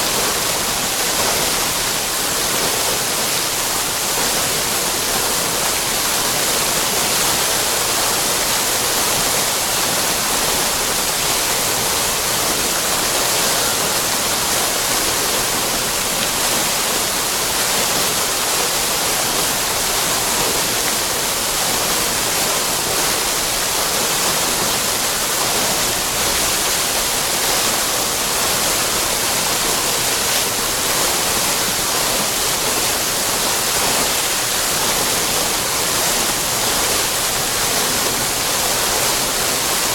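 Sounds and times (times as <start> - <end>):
water fountain splashing: 0.0 - 39.9.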